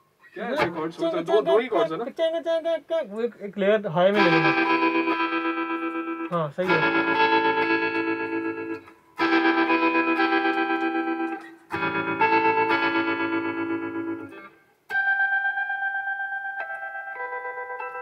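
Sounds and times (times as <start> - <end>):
electronic chords with pulsing tremolo: 4.2 - 14.4.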